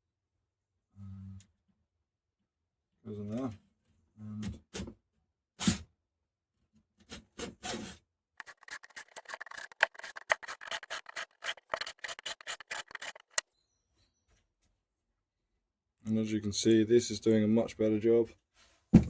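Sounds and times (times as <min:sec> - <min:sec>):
file rasping on chainsaw chain: 0:08.4 - 0:13.4.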